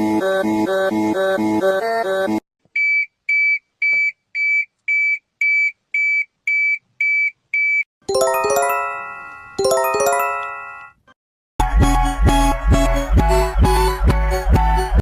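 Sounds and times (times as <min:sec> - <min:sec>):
ringing electronic chime tones: 0:08.1 - 0:11.0.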